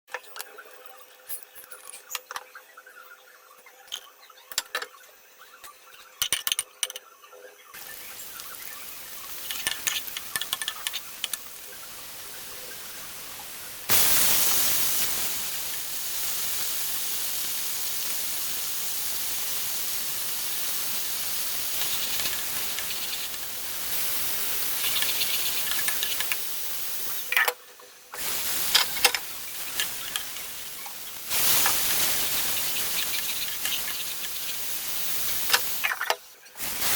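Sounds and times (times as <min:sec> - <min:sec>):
kitchen utensils clicking: 0:01.3 - 0:02.6, 0:05.9 - 0:07.1, 0:09.4 - 0:11.4, 0:24.8 - 0:26.5, 0:28.6 - 0:30.5
vegetables sizzling in hot oil: 0:07.8 - 0:36.9.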